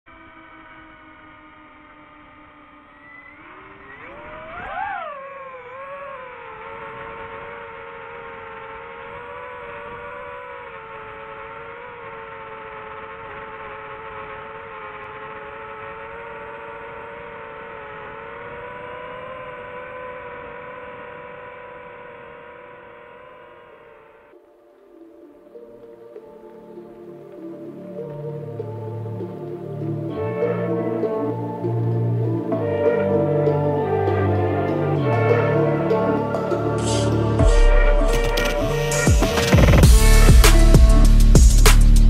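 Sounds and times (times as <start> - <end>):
drone motors whining: 0.1 - 42.0.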